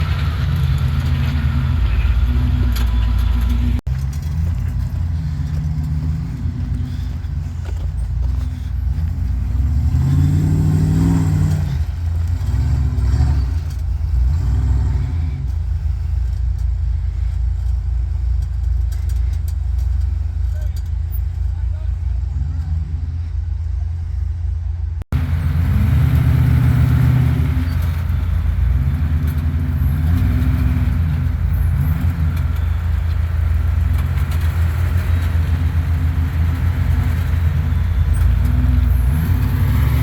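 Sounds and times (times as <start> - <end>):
engine revving: 0.0 - 16.2, 25.1 - 40.0
truck engine rumbling under load: 0.0 - 40.0.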